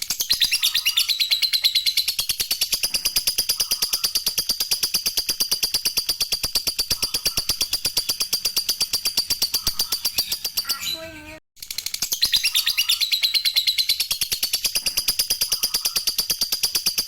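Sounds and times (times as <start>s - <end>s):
bird chattering trill: 0.2s - 17.0s.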